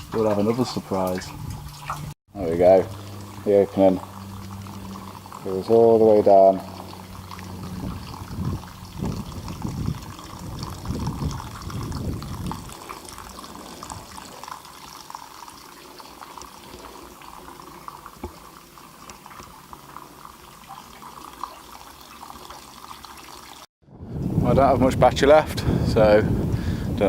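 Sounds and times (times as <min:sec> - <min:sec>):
low rumbles: 0:00.0 - 0:14.3
running water splashing: 0:00.0 - 0:23.7.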